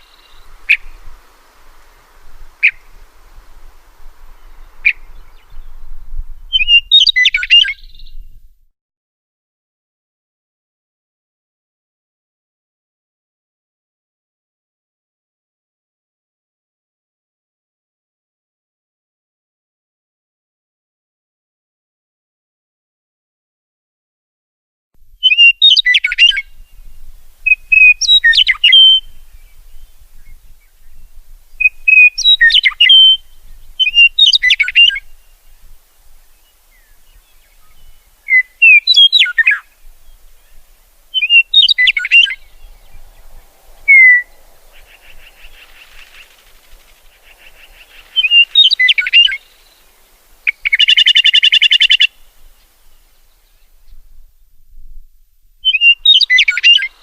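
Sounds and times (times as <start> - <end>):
songbird singing chirped phrases: 0.0 - 8.4, 25.2 - 54.2, 55.6 - 57.0
rapid buzzy bird trill: 43.9 - 52.2.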